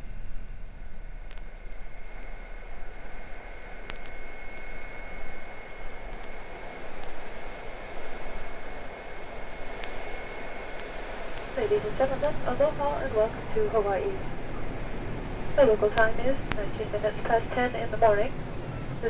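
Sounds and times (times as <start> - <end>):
high turbine whine: 0.0 - 19.0
jet engines running: 0.0 - 19.0
faint clicks: 15.9 - 16.8.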